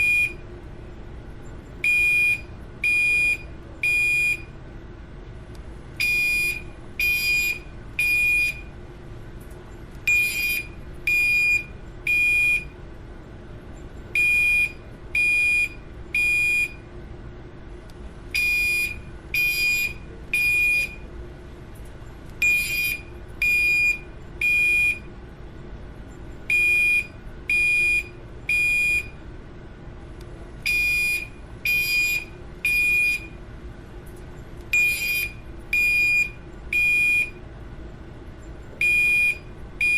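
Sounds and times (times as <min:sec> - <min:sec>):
fire alarm beeping: 0:00.0 - 0:00.4, 0:01.8 - 0:04.5, 0:06.0 - 0:08.7, 0:10.1 - 0:12.8, 0:14.1 - 0:16.8, 0:18.4 - 0:21.1, 0:22.4 - 0:25.1, 0:26.5 - 0:29.2, 0:30.6 - 0:33.4, 0:34.7 - 0:37.4, 0:38.8 - 0:39.9
faint steady hum: 0:00.0 - 0:39.9.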